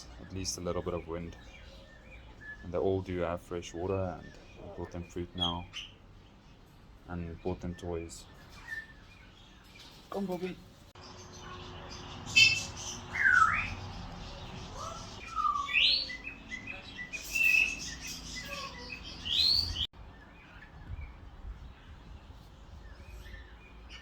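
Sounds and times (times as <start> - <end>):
faint chirping: 0.0 - 24.0
parrots squawking and whistling: 11.0 - 19.9.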